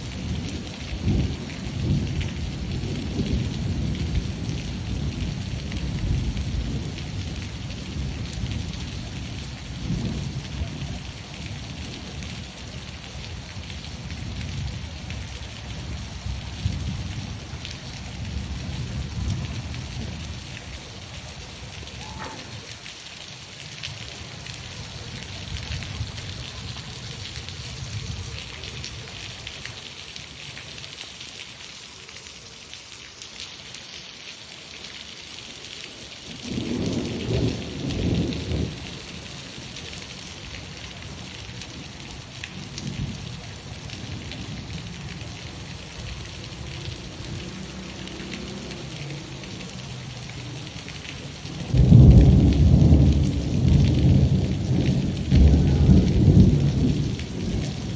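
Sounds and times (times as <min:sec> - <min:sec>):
heavy rain hissing: 0:00.0 - 0:57.9
thunder rumbling: 0:00.1 - 0:20.6, 0:21.7 - 0:22.9, 0:23.7 - 0:29.4, 0:36.3 - 0:49.0, 0:51.2 - 0:57.9
loud peal of thunder: 0:51.7 - 0:57.9.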